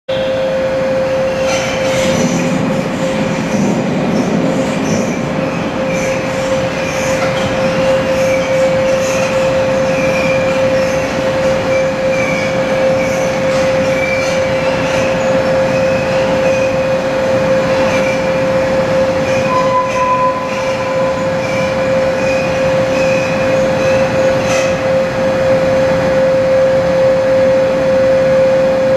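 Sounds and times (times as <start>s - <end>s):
steady high hum: 0.1s - 28.9s
wavering squeals: 4.6s - 24.8s.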